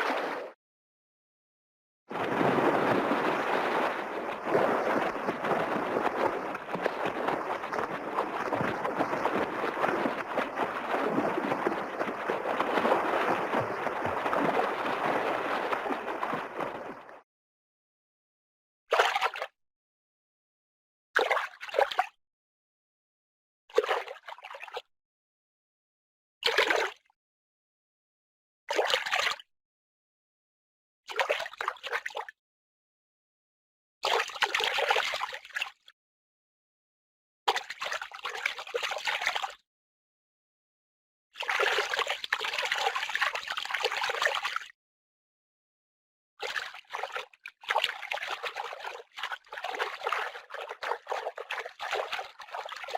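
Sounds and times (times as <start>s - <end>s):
water splashing and sloshing: 0.0s - 0.6s, 2.1s - 17.2s, 18.9s - 19.6s, 21.2s - 22.2s, 23.7s - 24.9s, 26.4s - 27.1s, 28.7s - 29.5s, 31.1s - 32.4s, 34.0s - 35.9s, 37.5s - 39.6s, 41.4s - 44.8s, 46.4s - 52.9s.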